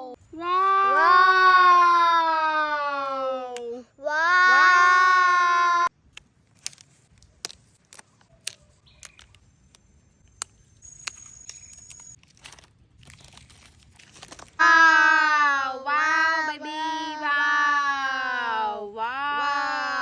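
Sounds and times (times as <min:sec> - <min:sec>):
sharp clicks and crunches: 0:06.1 - 0:14.6
light crinkling rustles: 0:06.2 - 0:14.6.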